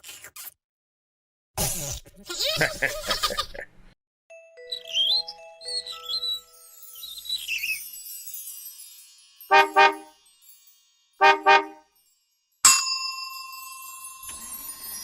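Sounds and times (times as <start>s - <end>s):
music: 4.3s - 12.6s, 13.5s - 15.0s
car horn honking: 9.5s - 10.1s, 11.2s - 11.8s.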